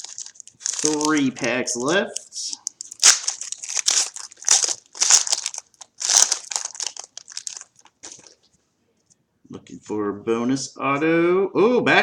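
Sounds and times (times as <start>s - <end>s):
wrapper crinkling: 0.0s - 8.5s.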